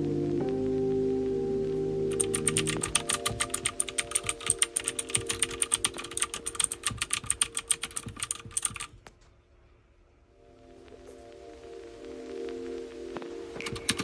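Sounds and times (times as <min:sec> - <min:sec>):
fast typing on mechanical keyboard: 0:02.1 - 0:09.0, 0:13.6 - 0:14.0.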